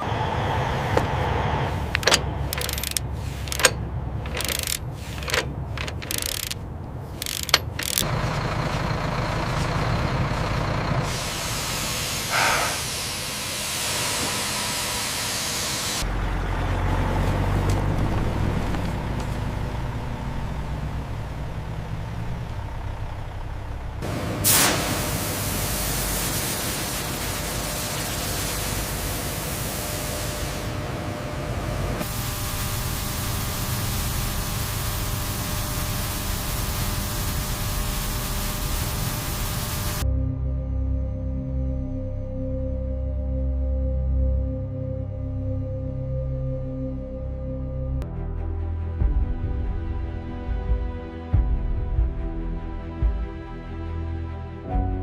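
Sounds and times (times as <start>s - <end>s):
sawmill machinery running: 0.0s - 6.6s, 7.2s - 12.4s, 30.1s - 40.0s
hissing air bursts: 11.1s - 16.0s, 24.4s - 30.7s, 32.1s - 40.0s.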